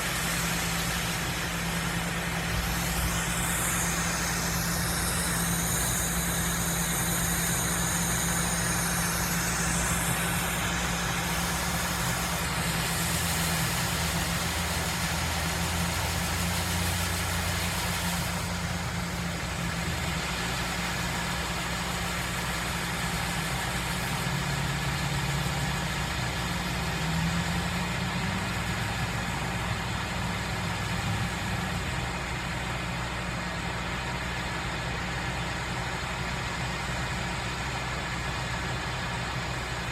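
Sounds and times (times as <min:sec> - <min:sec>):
thin high whine: 0:00.0 - 0:23.6
combine harvester engine running: 0:00.0 - 0:39.9.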